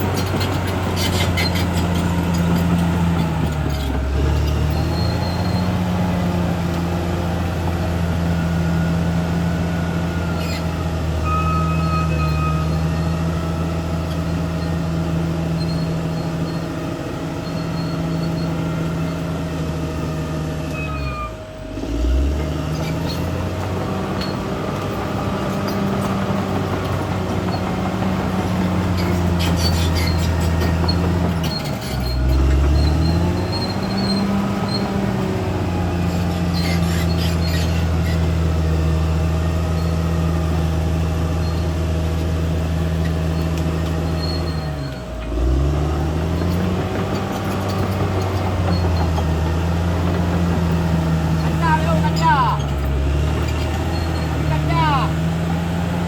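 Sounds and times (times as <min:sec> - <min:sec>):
faint high squeaks: 0:00.0 - 0:06.0, 0:10.0 - 0:13.4, 0:15.5 - 0:19.3, 0:20.6 - 0:23.4, 0:28.7 - 0:35.0, 0:36.0 - 0:38.4, 0:39.7 - 0:40.2, 0:41.3 - 0:41.8, 0:42.9 - 0:45.6, 0:46.4 - 0:49.8, 0:50.4 - 0:55.0
bulldozer diesel engine running: 0:00.0 - 0:56.0.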